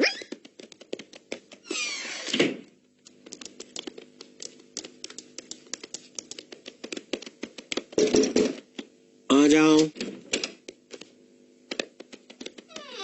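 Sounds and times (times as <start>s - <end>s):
rapid light clicks: 0.3s - 1.6s, 3.0s - 8.0s, 11.7s - 12.8s.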